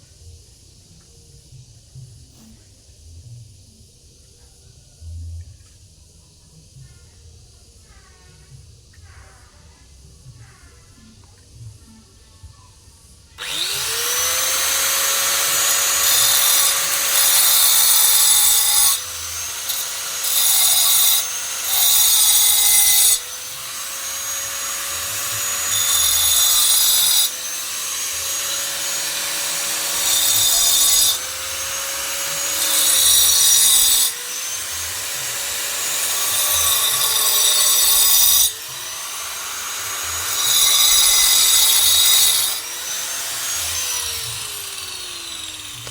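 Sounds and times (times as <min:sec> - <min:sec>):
power tool cutting stone: 0:13.4 - 0:45.9.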